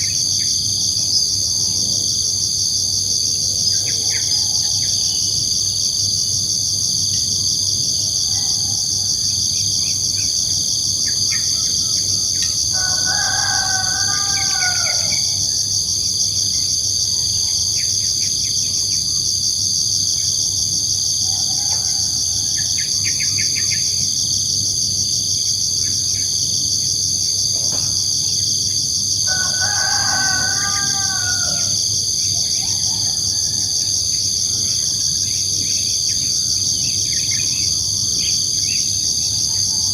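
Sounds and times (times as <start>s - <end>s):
crickets chirping: 0.0s - 39.9s
rooster crowing: 11.5s - 15.8s, 21.2s - 22.9s, 29.2s - 35.6s.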